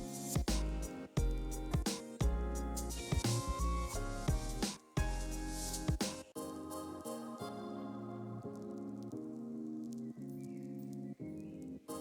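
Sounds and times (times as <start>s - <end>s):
background music with a beat: 0.0s - 6.7s.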